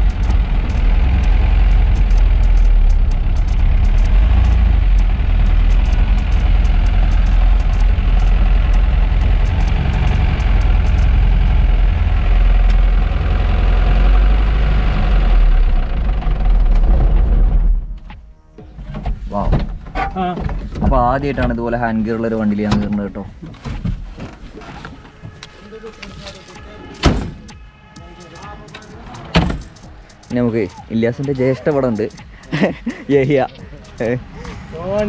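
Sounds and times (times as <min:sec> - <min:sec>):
car engine running: 0:00.0 - 0:20.0, 0:20.6 - 0:32.8.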